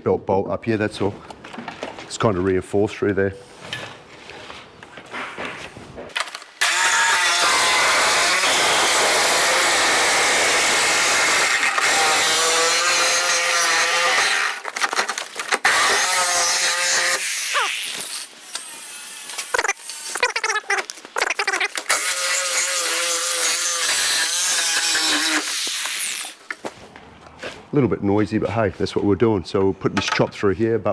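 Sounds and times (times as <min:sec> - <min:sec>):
chainsaw cutting sheet steel: 0:06.2 - 0:14.8, 0:15.6 - 0:26.4.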